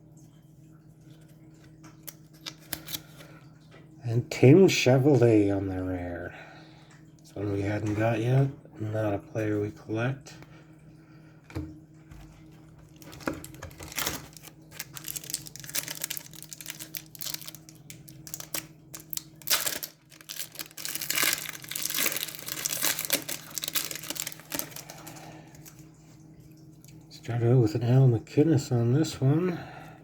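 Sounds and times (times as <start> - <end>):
card wrapper crinkling and tearing: 2.0 - 3.2, 12.8 - 25.8.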